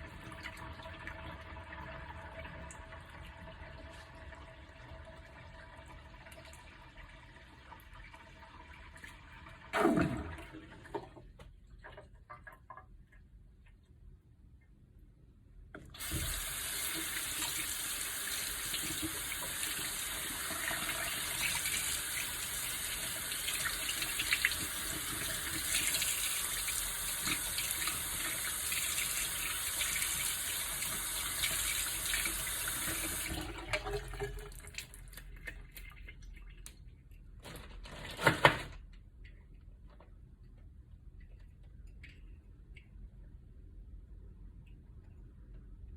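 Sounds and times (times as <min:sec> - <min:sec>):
tap water running into sink: 0:15.9 - 0:36.4.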